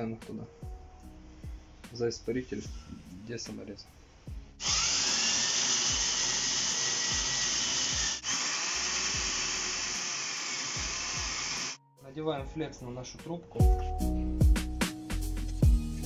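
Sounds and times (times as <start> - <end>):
cordless drill motor whining: 4.6 - 11.8.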